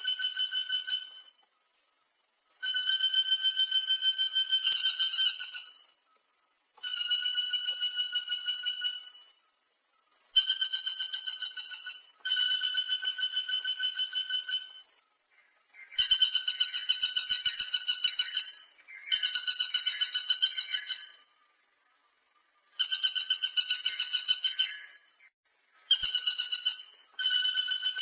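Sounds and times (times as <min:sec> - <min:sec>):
woodpecker call: 0:00.0 - 0:28.0.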